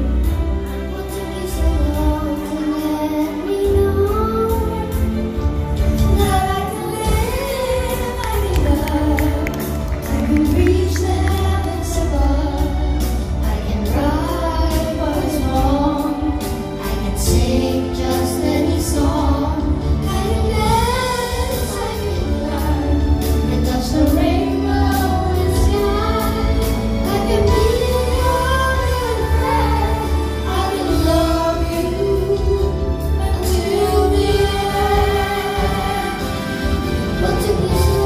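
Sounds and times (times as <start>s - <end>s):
band with heavy bass: 0.0s - 38.0s
woman singing: 0.0s - 38.0s.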